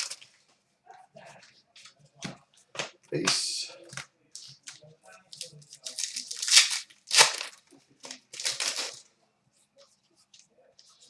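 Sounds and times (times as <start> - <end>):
trading cards rustling: 3.3 - 9.0.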